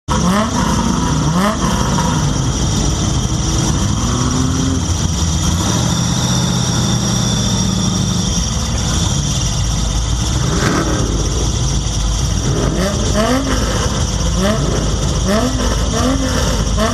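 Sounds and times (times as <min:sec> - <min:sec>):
vehicle engine revving: 0:00.0 - 0:16.9
squeaky drive belt squeal: 0:01.9 - 0:12.6.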